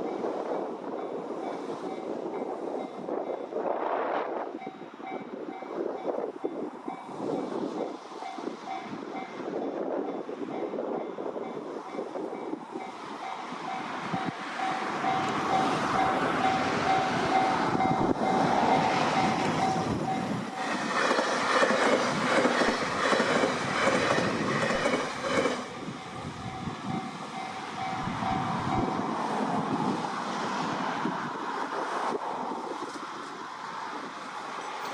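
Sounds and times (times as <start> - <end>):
electric train passing: 0.0 - 34.9
wheels clattering on rails: 6.3 - 29.1.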